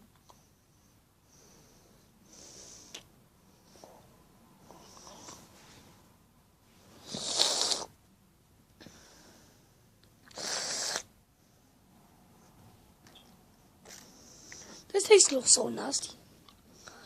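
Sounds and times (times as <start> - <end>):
person breathing hissing: 1.2 - 3.0, 7.0 - 7.9, 8.8 - 11.1.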